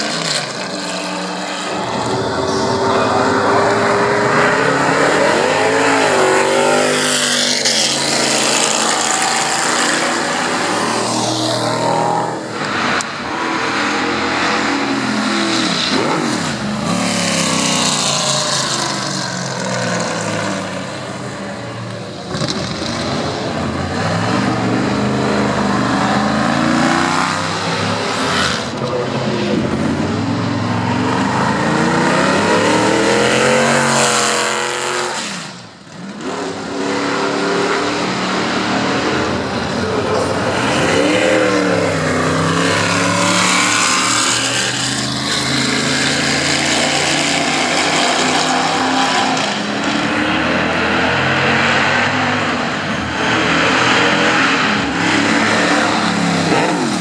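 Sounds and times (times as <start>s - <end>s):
racing cars passing at speed: 0.0s - 57.0s.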